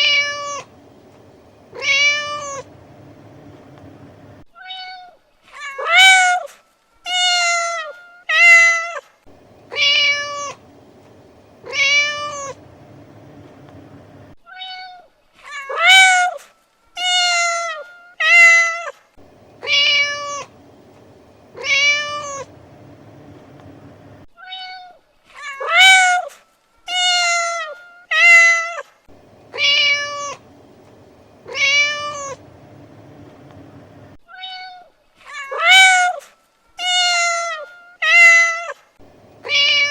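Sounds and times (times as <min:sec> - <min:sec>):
cat meowing: 0:00.0 - 0:00.7, 0:01.7 - 0:02.7, 0:09.7 - 0:10.6, 0:11.6 - 0:12.6, 0:19.6 - 0:20.6, 0:21.6 - 0:22.6, 0:24.4 - 0:26.3, 0:29.5 - 0:30.4, 0:31.4 - 0:32.4, 0:34.3 - 0:36.2, 0:39.4 - 0:39.9.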